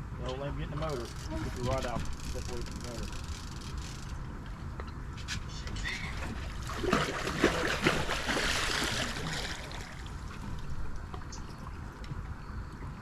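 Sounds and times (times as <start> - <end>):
water splashing and churning: 6.1 - 13.0.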